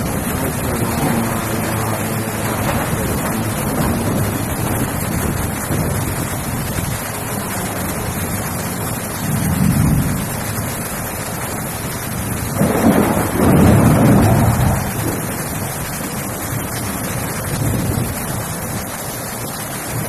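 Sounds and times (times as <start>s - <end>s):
heavy rain: 0.0s - 20.0s
wind gusts buffeting microphone: 0.0s - 20.0s.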